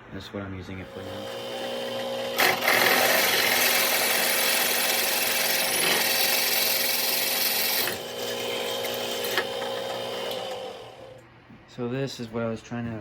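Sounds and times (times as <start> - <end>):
drill bit cutting metal: 0.8 - 11.2
drill press motor hum: 0.8 - 11.2.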